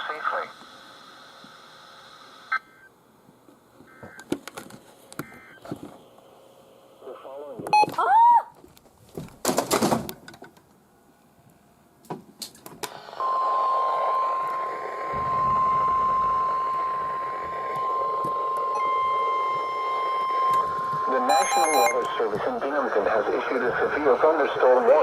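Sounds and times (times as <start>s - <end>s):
radio static: 0.0s - 0.7s, 7.0s - 7.7s, 21.1s - 25.0s
higher alarm tone: 13.1s - 22.2s
radio warning alarm tone: 13.2s - 23.0s.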